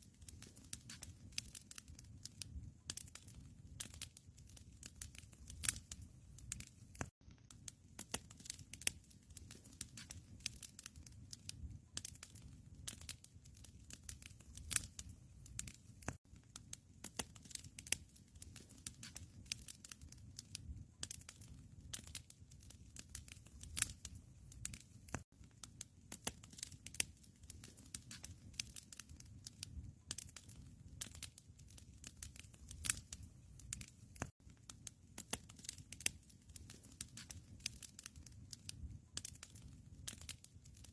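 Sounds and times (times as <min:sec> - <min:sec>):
low rumble of flames: 0:00.0 - 0:40.9
wood fire crackling: 0:00.0 - 0:40.9.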